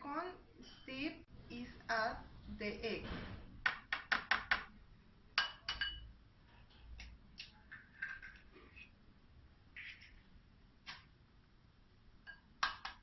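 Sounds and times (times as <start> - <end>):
egg tapping on bowl rim: 3.6 - 4.7, 12.3 - 13.0.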